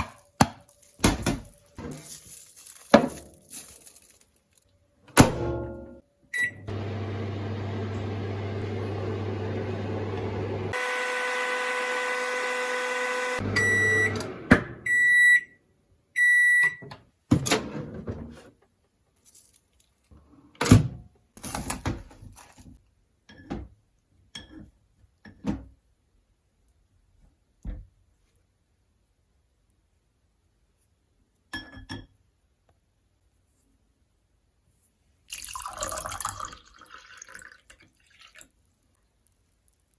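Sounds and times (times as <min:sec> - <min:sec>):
microwave oven humming: 0:06.4 - 0:14.8
microwave key beep: 0:13.5 - 0:14.3, 0:14.9 - 0:15.6
end-of-cycle beeps: 0:13.6 - 0:14.2.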